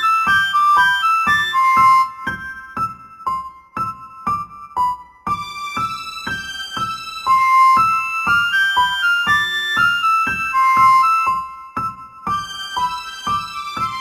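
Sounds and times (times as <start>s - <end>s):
simple keyboard melody: 0.0s - 14.0s.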